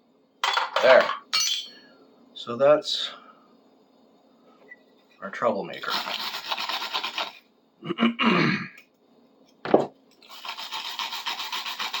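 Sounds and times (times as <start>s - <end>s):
wire brush scrubbing metal: 10.2s - 12.0s.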